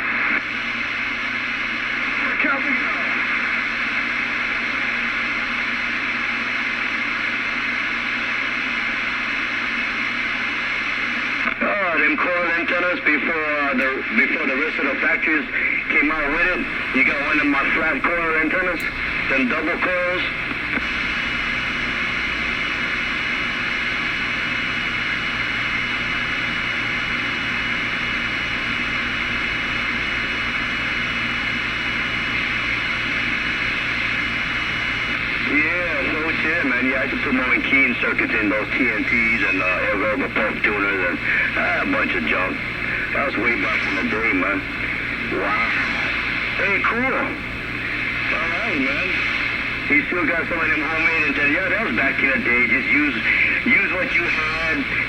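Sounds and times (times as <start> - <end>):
radio static hiss: 0.0 - 55.0
faint low hum: 12.3 - 55.0.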